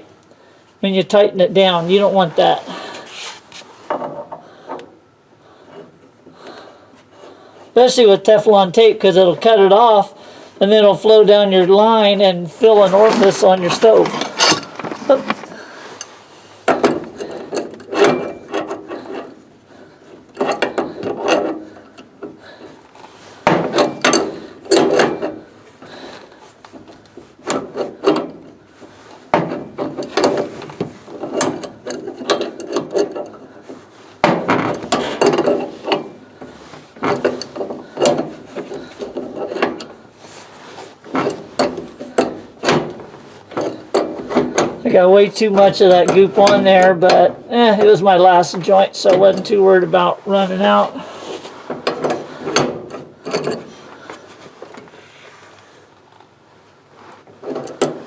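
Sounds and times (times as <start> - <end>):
metallic scraping and clicking threads: 12.8 - 16.1.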